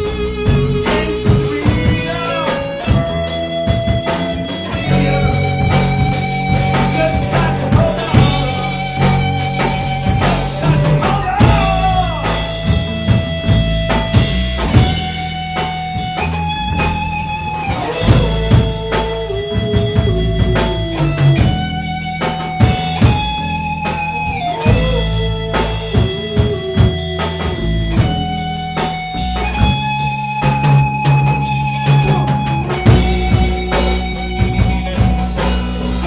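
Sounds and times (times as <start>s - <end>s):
bass guitar: 0.0s - 36.0s
drum kit: 0.0s - 36.0s
held lead guitar notes: 0.0s - 36.0s.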